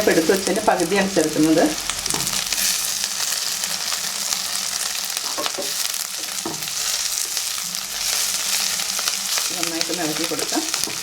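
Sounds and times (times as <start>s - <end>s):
onions sizzling in oil: 0.0s - 11.0s.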